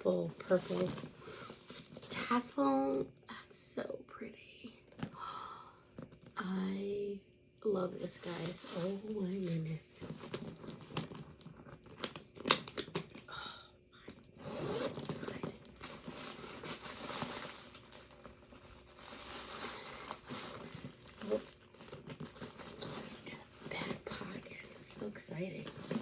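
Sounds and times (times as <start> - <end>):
packaging crinkling and rustling: 0.0 - 2.5, 8.0 - 13.2, 14.4 - 26.0.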